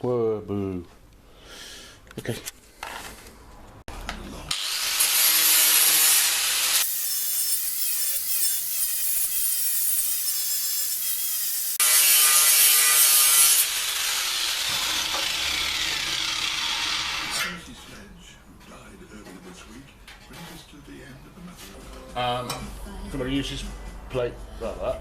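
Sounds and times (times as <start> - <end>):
power tool abrading metal: 4.5 - 17.6.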